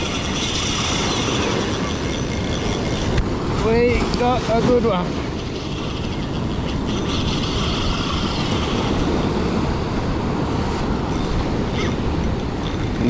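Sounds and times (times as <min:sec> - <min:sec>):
wind buffeting microphone: 0:00.0 - 0:13.0
surf washing on beach: 0:03.2 - 0:05.4, 0:06.8 - 0:13.0.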